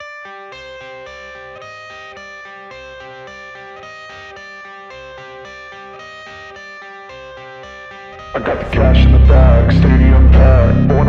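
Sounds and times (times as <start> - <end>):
electric guitar riff: 7.4 - 11.0
steady rock beat: 8.3 - 11.0.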